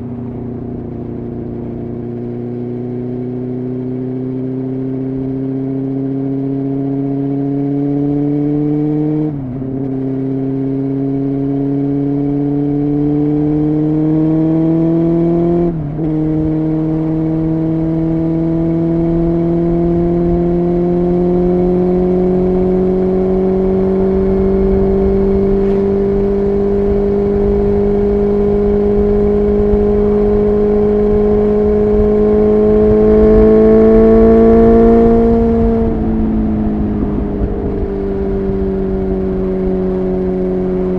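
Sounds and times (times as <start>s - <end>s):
wind rumble: 14.5s - 40.9s.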